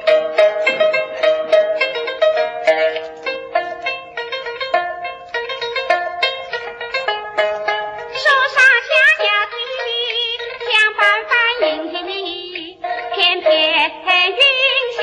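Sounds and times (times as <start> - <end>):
instrumental accompaniment: 0.0 - 15.0
person singing with vibrato: 8.2 - 15.0.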